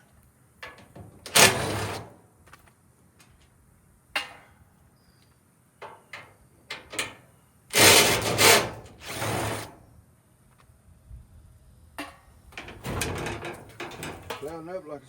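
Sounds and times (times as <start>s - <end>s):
metal parts clicking and clanking: 5.8s - 9.3s, 12.6s - 14.6s
power driver spinning screws: 7.7s - 9.7s.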